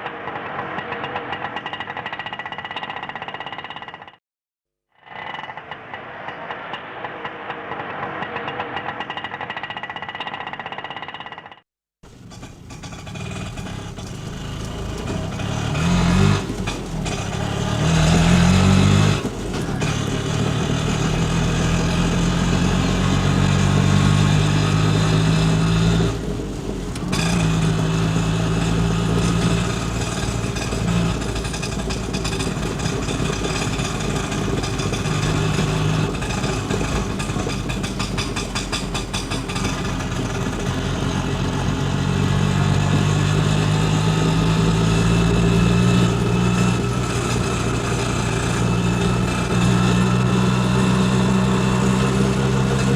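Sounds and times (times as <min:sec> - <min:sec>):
small engine revving: 0:12.1 - 0:52.9.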